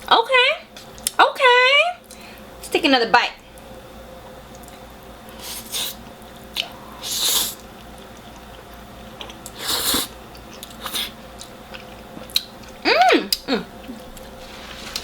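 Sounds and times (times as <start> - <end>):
chewing: 6.3 - 6.9, 7.6 - 15.0
noodle slurping: 7.0 - 7.6, 9.5 - 10.2.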